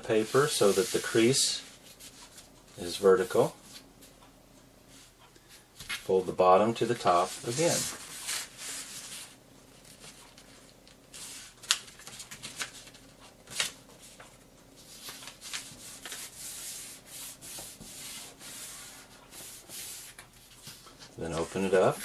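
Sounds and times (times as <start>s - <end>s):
paper crackling: 6.9s - 17.8s
paper rustling: 6.9s - 22.0s.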